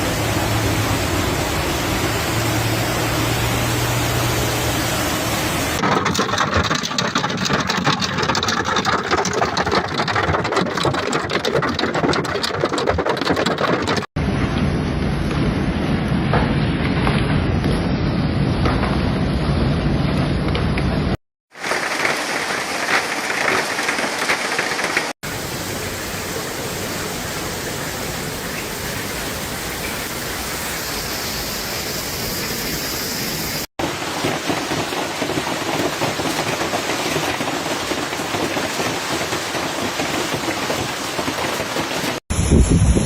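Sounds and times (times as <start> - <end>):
heavy rain downpour: 0.0 - 7.3, 21.5 - 43.0.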